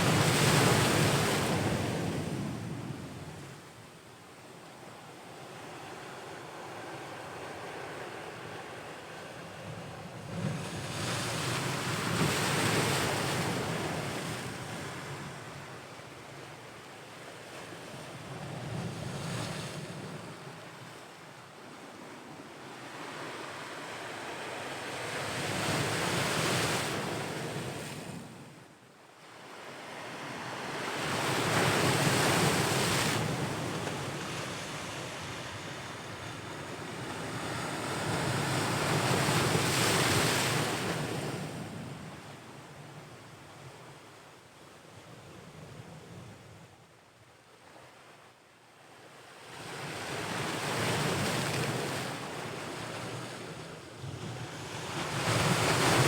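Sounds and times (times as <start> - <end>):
ocean waves breaking on shore: 29.4 - 42.1, 49.8 - 56.0.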